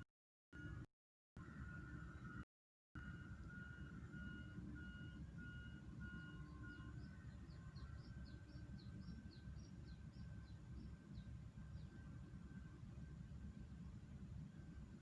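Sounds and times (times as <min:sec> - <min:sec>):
faint pulsing tone: 0:00.6 - 0:02.4, 0:03.0 - 0:15.0
bird chirping: 0:06.1 - 0:12.0.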